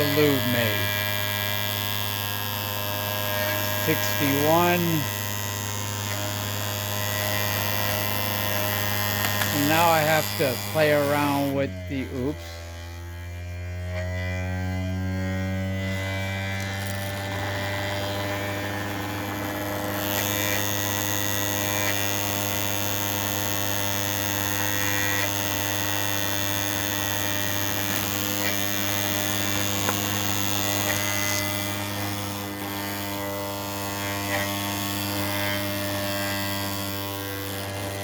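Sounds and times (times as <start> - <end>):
thin high whine: 0.0 - 12.5
motor rotor humming: 0.0 - 38.0.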